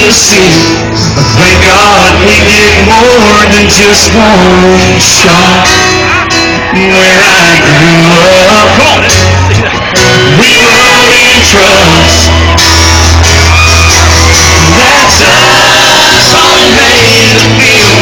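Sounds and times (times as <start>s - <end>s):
crowd shouting and singing: 0.0s - 18.0s
live country band music: 0.0s - 18.0s.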